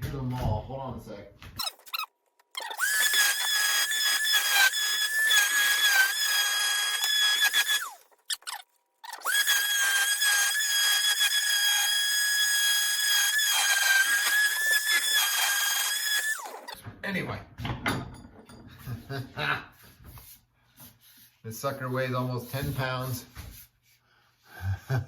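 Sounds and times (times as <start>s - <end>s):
power tool motor whine: 2.6s - 8.6s, 9.2s - 16.7s.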